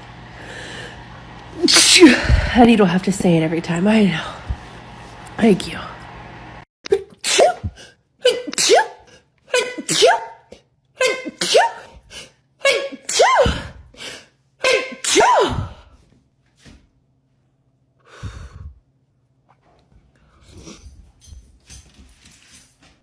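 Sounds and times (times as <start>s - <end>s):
woman sneezing: 1.6s - 2.6s, 6.9s - 15.9s.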